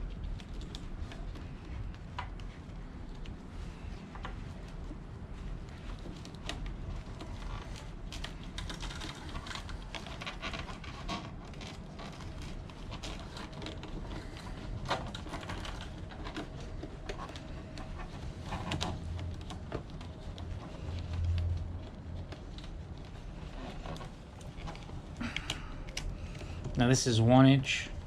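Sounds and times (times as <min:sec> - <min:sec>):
plastic wire loom crackling: 0:05.7 - 0:28.0
low hum: 0:16.6 - 0:28.0
low rumble: 0:18.4 - 0:26.8.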